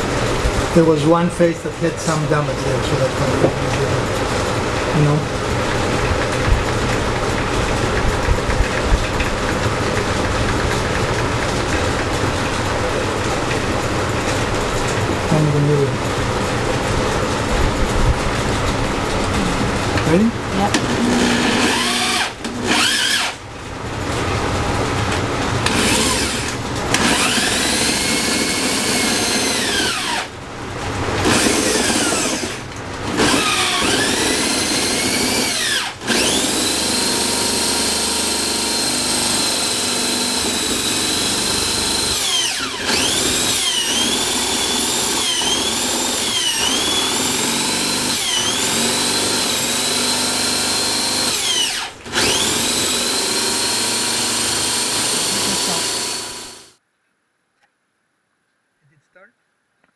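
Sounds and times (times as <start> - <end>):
power tool motor whining: 14.3 - 56.8.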